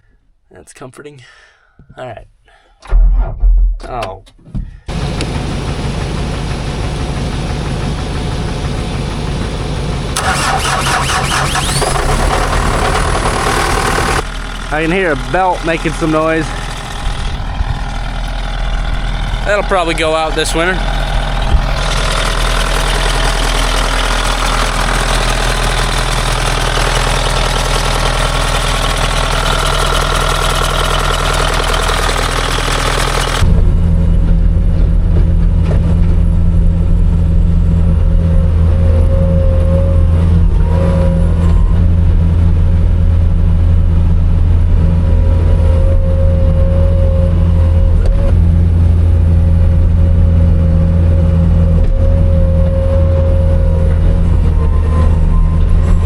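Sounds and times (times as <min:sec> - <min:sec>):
engine belt noise: 0:04.9 - 0:41.6
diesel engine running: 0:04.9 - 0:56.0.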